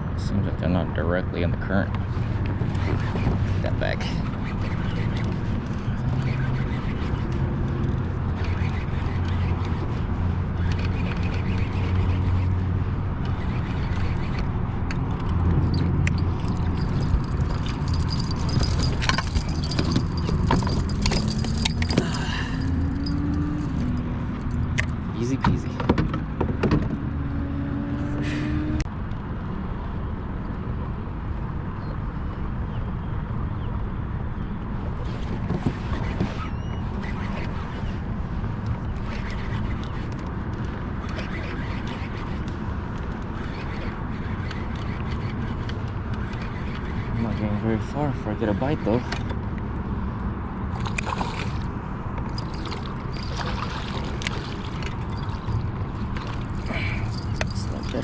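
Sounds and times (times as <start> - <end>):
wind and water rumble: 0.0 - 28.2, 48.9 - 58.0.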